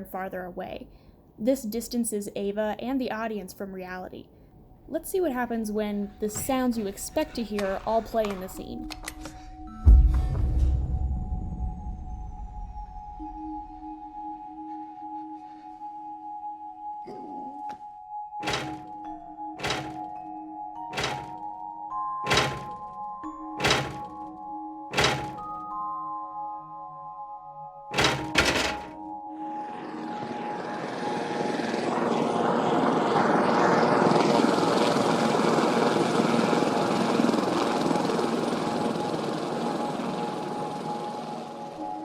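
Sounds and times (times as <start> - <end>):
heavy thunks: 18.4 - 19.0, 19.6 - 20.1, 21.0 - 21.4, 22.3 - 23.0, 23.6 - 24.2, 24.9 - 25.7, 27.9 - 29.0
helicopter rotor and engine: 29.7 - 41.8.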